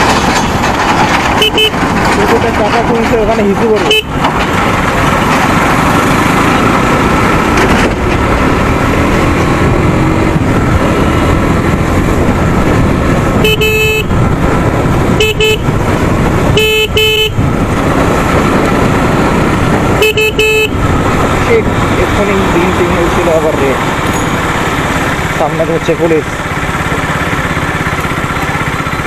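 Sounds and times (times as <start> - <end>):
traffic and motorcycle engine: 0.0 - 29.0
vehicle horn honking: 1.4 - 1.8, 3.8 - 4.2, 13.4 - 14.2, 15.1 - 15.8, 16.5 - 17.4, 20.0 - 20.8.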